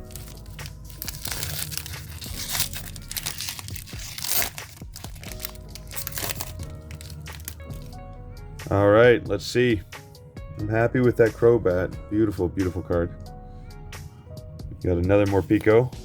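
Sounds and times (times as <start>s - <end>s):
foil wrapper crinkling and tearing: 0.0s - 8.0s
background music: 0.0s - 16.0s.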